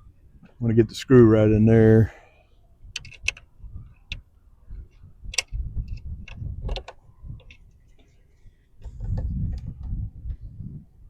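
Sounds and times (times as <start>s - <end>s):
clicks of screw and plastic housing: 2.9s - 3.5s, 5.3s - 8.2s, 8.8s - 10.4s.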